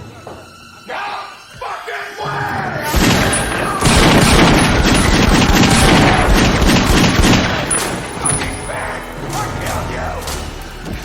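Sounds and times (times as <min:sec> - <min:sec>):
rapid gunfire: 0:02.9 - 0:08.6.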